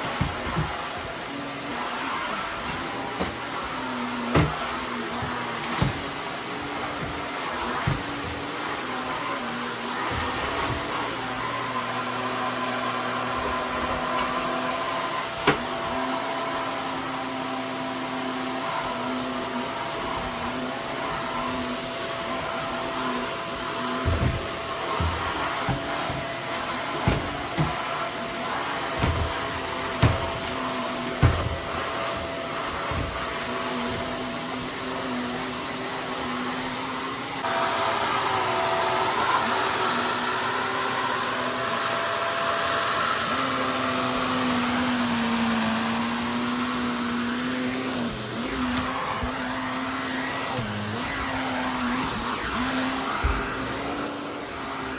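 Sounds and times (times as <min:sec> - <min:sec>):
knocks and thumps: 0:00.0 - 0:01.1, 0:02.6 - 0:03.6, 0:04.2 - 0:06.2, 0:07.0 - 0:08.5, 0:24.0 - 0:26.3, 0:27.0 - 0:27.8, 0:28.9 - 0:30.5, 0:31.2 - 0:31.8
vacuum cleaner running: 0:00.0 - 0:54.9.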